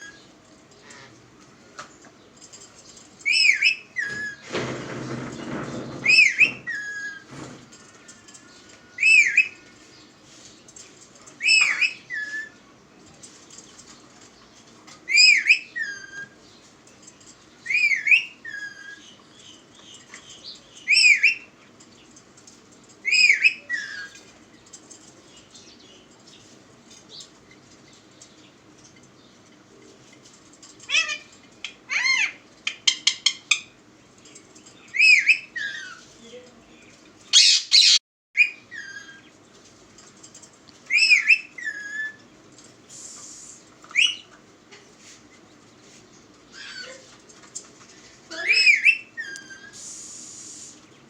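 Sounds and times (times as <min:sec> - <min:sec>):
rustling: 0:04.0 - 0:15.2, 0:41.6 - 0:48.4
parrot whistly calls: 0:37.3 - 0:39.2, 0:40.9 - 0:42.2, 0:43.9 - 0:44.3, 0:48.4 - 0:49.8.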